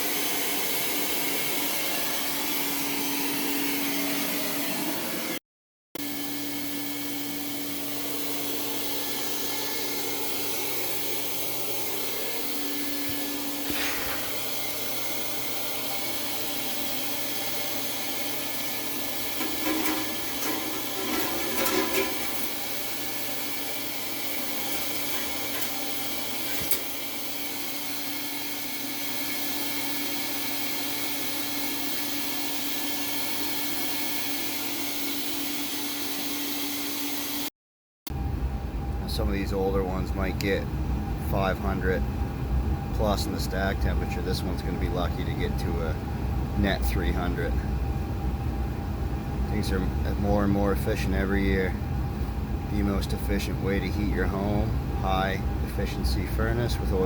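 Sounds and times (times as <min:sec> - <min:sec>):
oil burner running: 0:06.0 - 0:37.5, 0:38.1 - 0:57.0
clattering: 0:19.4 - 0:22.7, 0:24.6 - 0:26.9.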